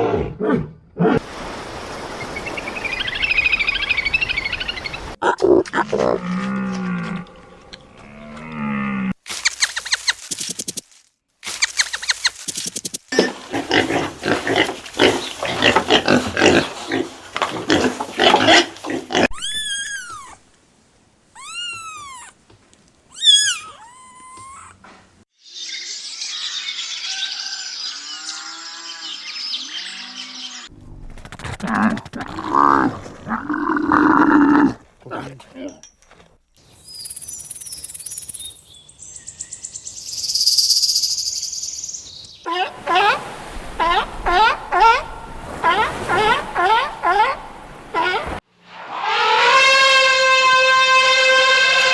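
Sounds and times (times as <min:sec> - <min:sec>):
high arching calls: 0:09.3 - 0:10.8, 0:11.4 - 0:20.2, 0:36.6 - 0:48.2
pig grunting: 0:13.1 - 0:19.3
insects trilling: 0:36.7 - 0:42.1.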